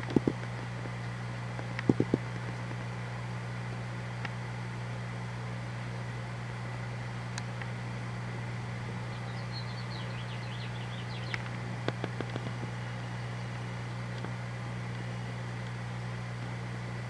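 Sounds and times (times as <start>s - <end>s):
low mechanical hum: 0.0s - 17.0s
songbird chirping: 9.1s - 11.5s.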